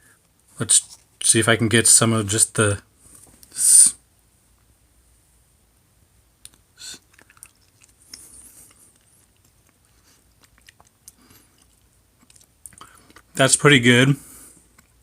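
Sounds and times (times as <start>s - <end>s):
wet mouth clicks and smacks: 6.4s - 13.3s
person chewing food: 6.4s - 13.4s, 14.6s - 15.0s.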